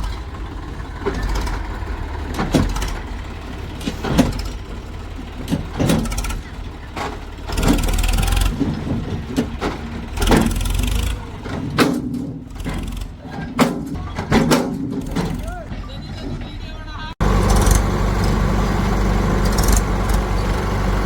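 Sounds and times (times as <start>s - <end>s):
noisy engine surges: 0.0s - 14.0s, 15.1s - 21.0s
clanks and knocks: 0.0s - 16.6s
diesel engine running: 0.0s - 21.0s.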